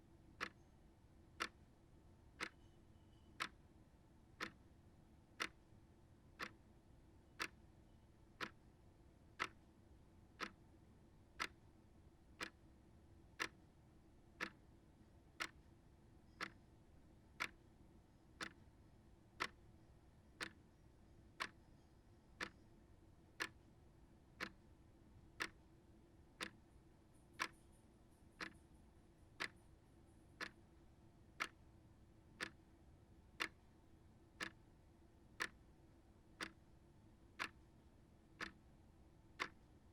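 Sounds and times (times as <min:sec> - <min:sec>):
clock ticking: 0:04.4 - 0:04.6, 0:10.4 - 0:10.6, 0:11.4 - 0:11.6, 0:12.4 - 0:12.6, 0:14.4 - 0:14.6, 0:17.4 - 0:17.6, 0:18.4 - 0:18.6, 0:25.4 - 0:25.6, 0:26.4 - 0:26.6, 0:32.4 - 0:32.6, 0:33.4 - 0:33.6, 0:35.4 - 0:35.6, 0:36.4 - 0:36.6, 0:37.4 - 0:37.6, 0:38.4 - 0:38.6, 0:39.4 - 0:39.7.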